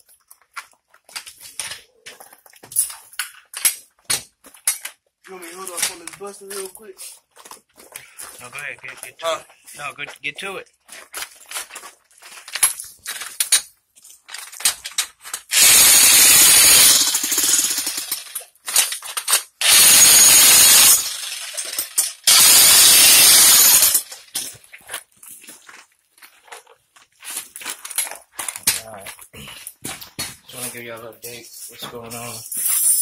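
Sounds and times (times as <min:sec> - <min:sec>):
jackhammer breaking concrete: 0:15.5 - 0:24.3.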